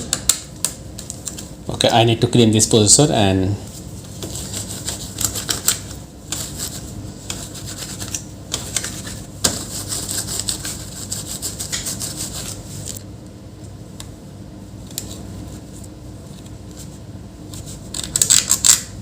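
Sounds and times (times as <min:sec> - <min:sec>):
rubbing and scratching strokes: 0:03.7 - 0:13.0.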